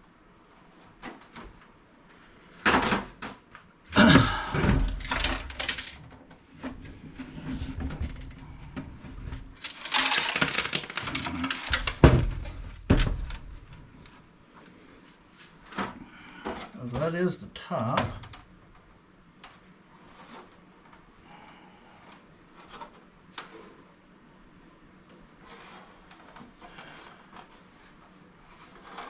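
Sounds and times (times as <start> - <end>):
computer case panels knocking: 9.9 - 13.6.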